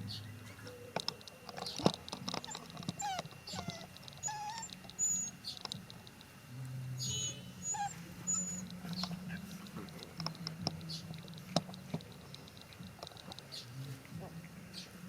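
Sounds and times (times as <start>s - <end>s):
low hum: 0.0s - 15.0s
small animal squeaks and chirps: 2.5s - 5.6s, 7.0s - 9.1s.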